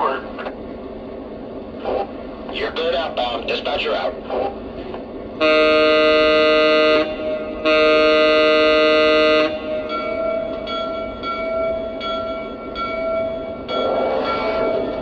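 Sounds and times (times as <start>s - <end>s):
electronic diesel horn blasts: 5.4s - 9.8s
locomotive bell ringing: 6.5s - 15.0s.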